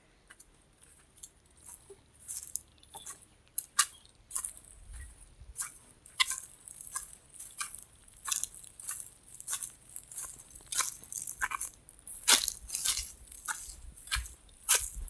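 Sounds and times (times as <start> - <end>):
footsteps crunching on dry ground: 0.3 - 15.0.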